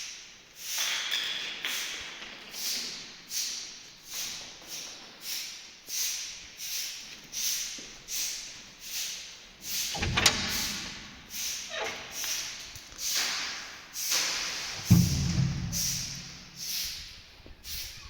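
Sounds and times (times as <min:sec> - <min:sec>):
knock with falling scrape: 0:14.8 - 0:16.2.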